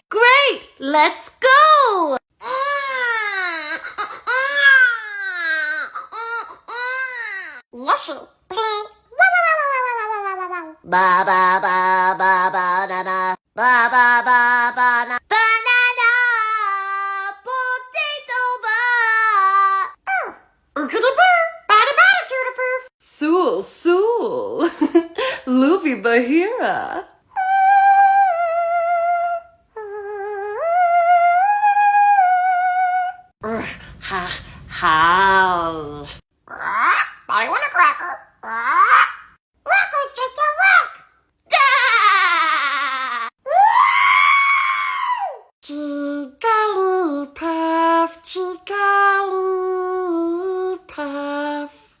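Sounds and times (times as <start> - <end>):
person singing high falsetto notes: 8.5 - 20.4, 27.3 - 33.3.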